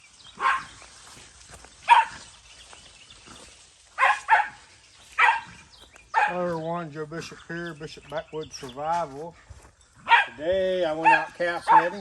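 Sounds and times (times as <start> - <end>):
dog barking: 0.4 - 0.8, 1.9 - 2.3, 4.0 - 6.6, 10.0 - 10.4, 11.0 - 12.0.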